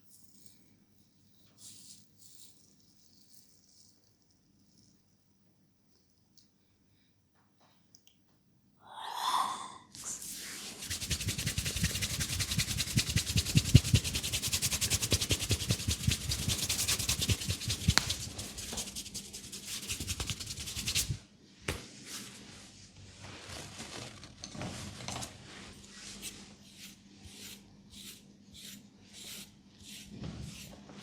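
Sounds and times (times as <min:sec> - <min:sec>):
click: 0:07.9 - 0:08.2
hands rubbing through hair: 0:10.1 - 0:22.6.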